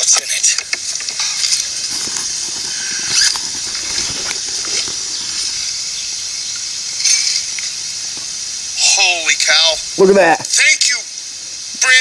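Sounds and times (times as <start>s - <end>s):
wrapping being torn open: 1.2s - 9.3s.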